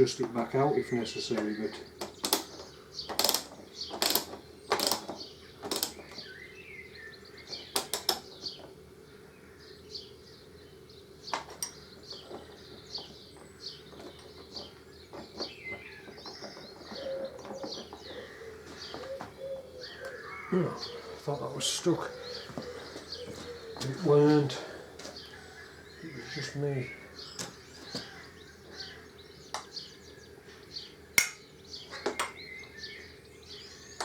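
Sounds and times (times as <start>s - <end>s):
small birds chirping: 0.0s - 34.0s
hand tools clicking on metal: 1.3s - 6.2s.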